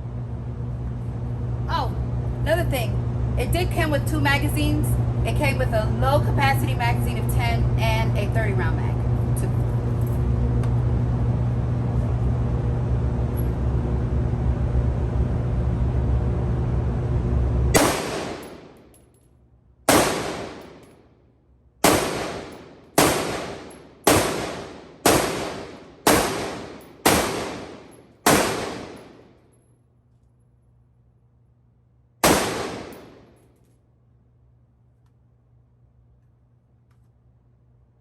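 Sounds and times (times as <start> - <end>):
steady low hum: 0.0 - 38.0
rifle shots with reverb: 17.7 - 18.8, 19.9 - 20.9, 21.8 - 29.4, 32.2 - 33.4.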